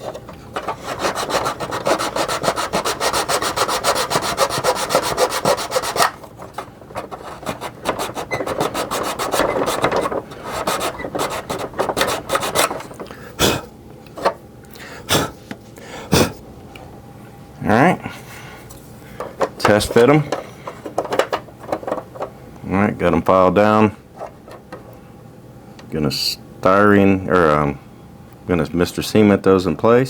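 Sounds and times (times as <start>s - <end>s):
needle file rasping on plastic: 0.0s - 12.9s.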